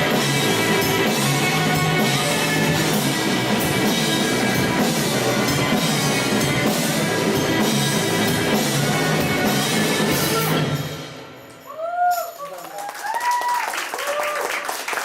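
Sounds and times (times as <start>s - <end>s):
rock band playing: 0.0s - 11.3s.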